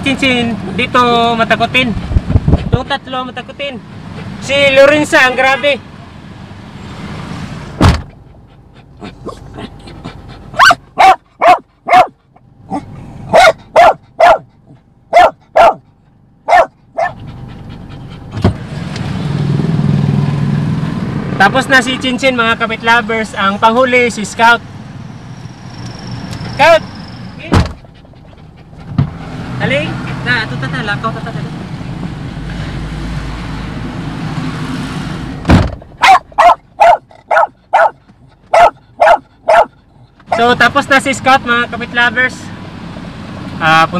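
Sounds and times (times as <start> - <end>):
low engine-like rumble: 7.5 - 20.4, 21.4 - 32.4
sudden loud knock: 7.8 - 8.1, 27.5 - 27.8, 35.5 - 35.8
dog barking: 10.6 - 14.5, 15.1 - 17.2, 36.0 - 40.4.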